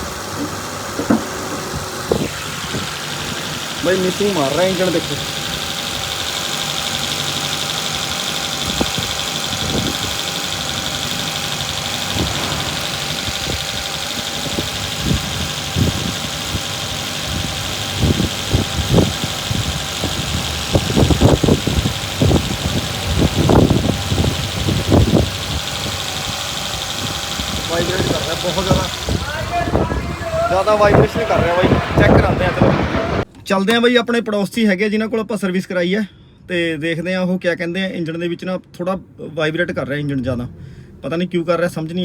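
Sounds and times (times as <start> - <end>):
car engine idling with misfire: 0.0 - 33.3
person talking: 27.6 - 34.0.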